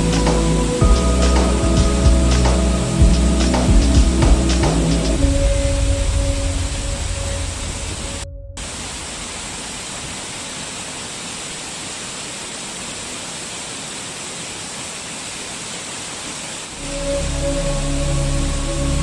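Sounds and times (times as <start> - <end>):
low rumble: 0.0 - 10.0
waterfall rushing: 0.0 - 19.0.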